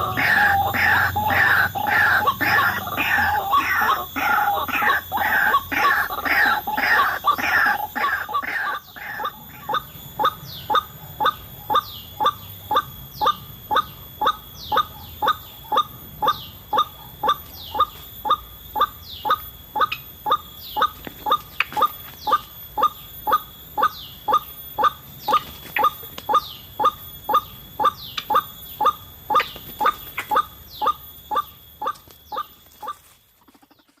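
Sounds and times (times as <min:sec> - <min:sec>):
waterhen call: 0:00.0 - 0:10.9.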